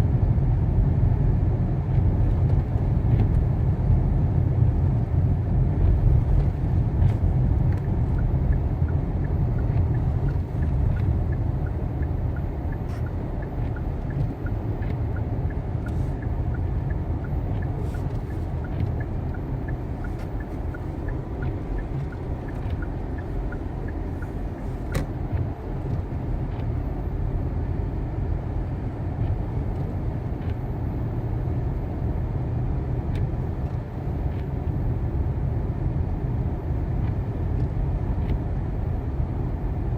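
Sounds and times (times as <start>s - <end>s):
car engine and tyre rumble: 0.0s - 39.9s
faint regular ticking: 6.0s - 26.1s.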